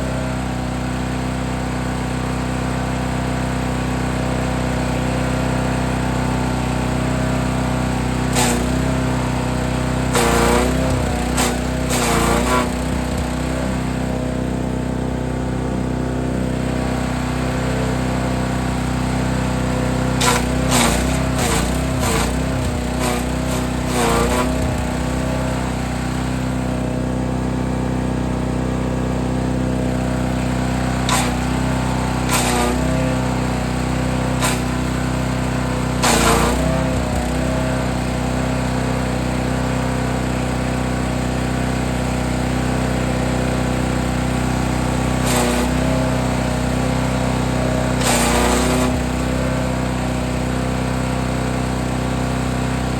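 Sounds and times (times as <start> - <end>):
wood chipper engine running: 0.0 - 52.9
wood crackling and snapping: 8.4 - 8.7, 20.2 - 24.6, 31.1 - 31.5, 32.3 - 32.9, 34.4 - 34.7.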